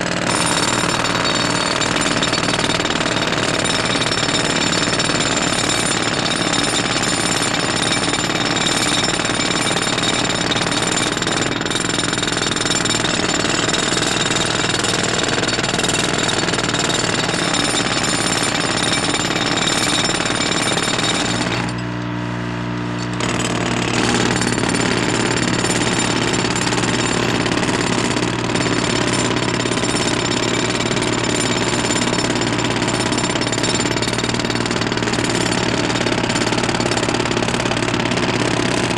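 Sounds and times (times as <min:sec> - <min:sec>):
rapid mechanical hammering: 0:00.2 - 0:21.7.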